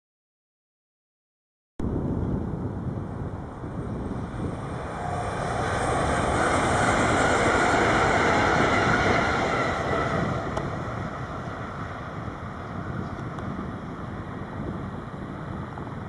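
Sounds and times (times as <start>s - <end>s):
train passing: 3.4s - 15.8s.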